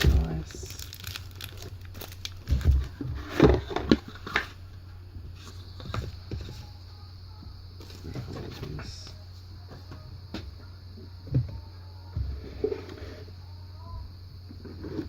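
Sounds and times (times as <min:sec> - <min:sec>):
cardboard packaging knocks and rustles: 0:00.0 - 0:04.5
steady low hum: 0:00.0 - 0:15.0.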